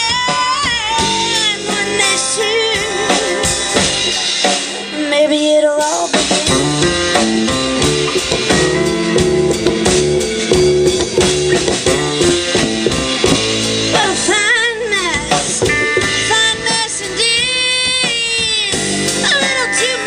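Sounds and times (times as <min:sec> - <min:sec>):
drum kit beat: 0:00.0 - 0:20.0
electric guitar: 0:00.0 - 0:20.0
bending guitar note: 0:06.5 - 0:17.3.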